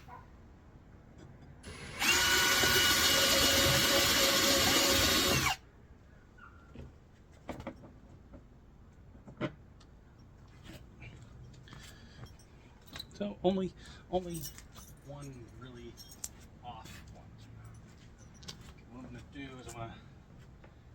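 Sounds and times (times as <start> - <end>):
power drill whining: 1.6 - 5.6.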